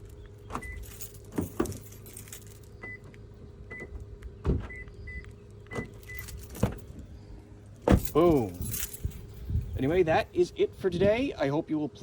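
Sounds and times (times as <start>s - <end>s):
car door locks clicking and clunking: 0.4s - 1.9s, 2.8s - 7.0s, 7.8s - 8.2s.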